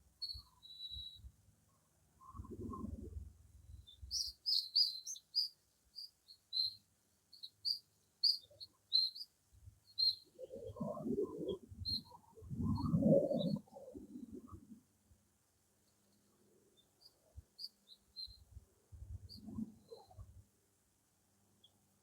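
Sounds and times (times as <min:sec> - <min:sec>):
small bird chirping: 0:00.2 - 0:01.3, 0:03.6 - 0:13.6, 0:15.8 - 0:18.6, 0:19.2 - 0:20.3
high bird chirps: 0:03.8 - 0:09.3, 0:09.9 - 0:10.6.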